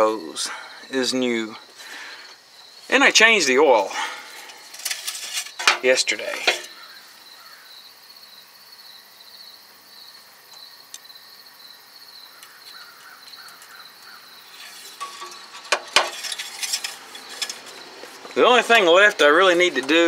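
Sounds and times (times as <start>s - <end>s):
insects chirping: 0.0s - 20.0s
rustling handling noise: 2.8s - 7.0s, 12.7s - 20.0s.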